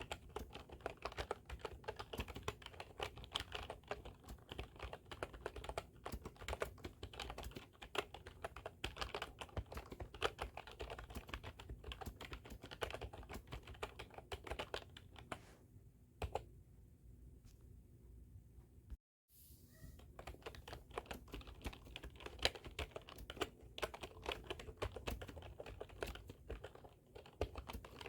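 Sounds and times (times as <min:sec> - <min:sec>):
computer keyboard typing: 0:00.0 - 0:15.4, 0:16.2 - 0:16.5, 0:20.1 - 0:28.0.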